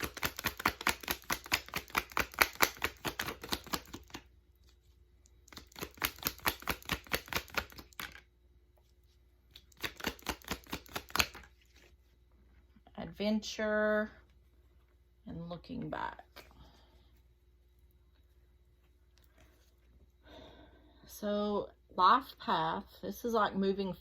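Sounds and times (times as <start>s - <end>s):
cards being shuffled: 0.0s - 4.8s, 5.4s - 8.3s, 9.5s - 12.0s.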